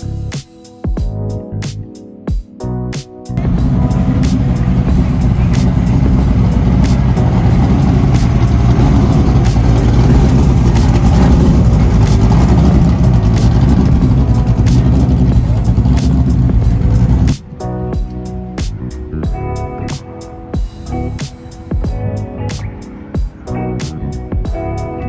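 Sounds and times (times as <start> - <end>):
car engine and exhaust running: 3.4 - 17.4.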